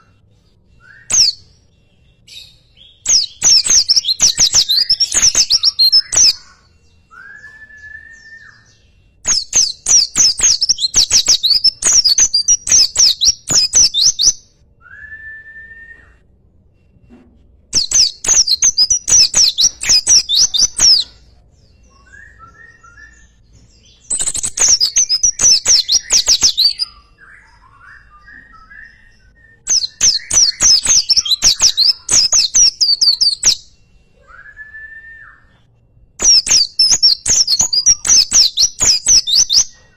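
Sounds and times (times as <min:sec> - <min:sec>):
soft chirps: 0:00.0 - 0:14.8, 0:15.9 - 0:34.6, 0:35.3 - 0:39.9
songbird singing rapid high notes: 0:03.0 - 0:06.6, 0:09.3 - 0:14.4, 0:17.8 - 0:21.2, 0:24.0 - 0:27.7, 0:29.7 - 0:33.6, 0:36.2 - 0:39.6.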